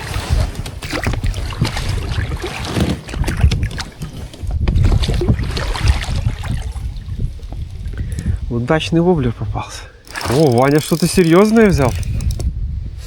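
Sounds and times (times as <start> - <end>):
wind buffeting microphone: 0.0 - 13.0
handling knocks and clicks: 10.0 - 12.5.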